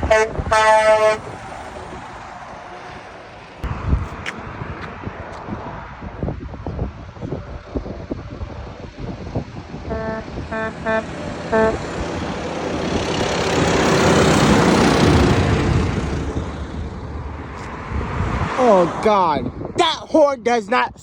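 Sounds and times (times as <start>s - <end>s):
truck horn tooting: 0.0s - 1.4s, 9.9s - 12.3s
truck passing by: 0.0s - 19.7s.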